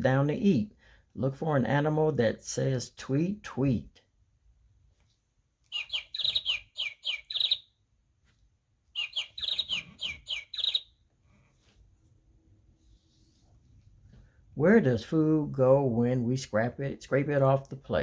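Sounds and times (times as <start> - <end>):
recorded bird tweets: 5.7 - 7.8, 8.9 - 11.0.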